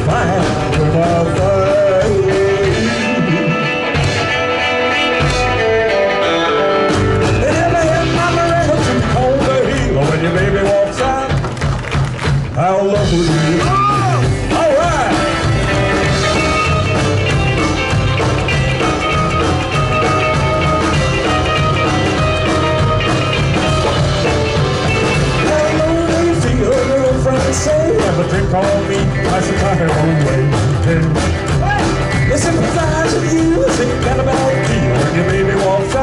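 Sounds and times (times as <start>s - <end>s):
person singing: 0.0s - 4.2s, 7.2s - 11.4s, 12.6s - 17.2s, 23.9s - 36.0s
live rock and roll band: 0.0s - 36.0s.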